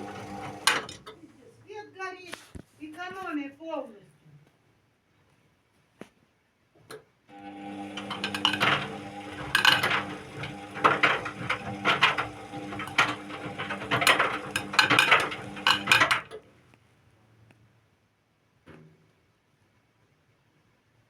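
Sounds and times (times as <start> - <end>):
washing machine motor humming: 0.0 - 1.1, 7.3 - 16.4
clinking and clattering: 7.8 - 16.4.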